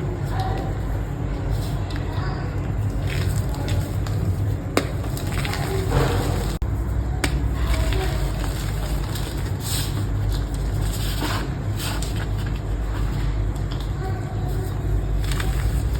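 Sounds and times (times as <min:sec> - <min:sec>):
steady low rumble: 0:00.0 - 0:15.9.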